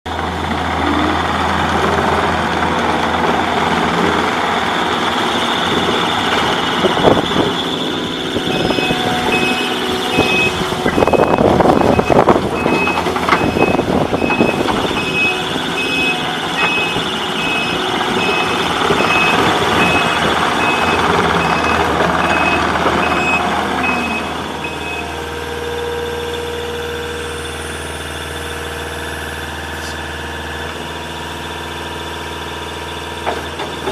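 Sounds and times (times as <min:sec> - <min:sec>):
diesel engine running: 0:00.0 - 0:33.9
reversing alarm beeping: 0:04.9 - 0:29.5.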